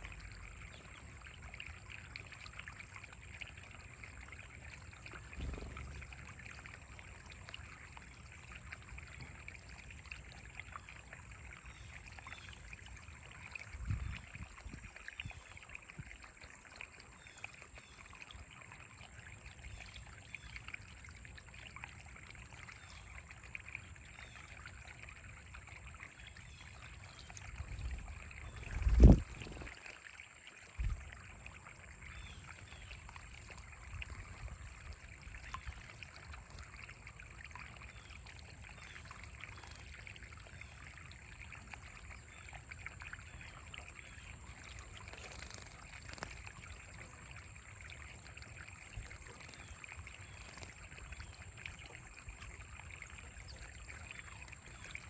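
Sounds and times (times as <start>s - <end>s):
water trickling: 0.0s - 55.0s
low thumps: 5.3s - 6.8s.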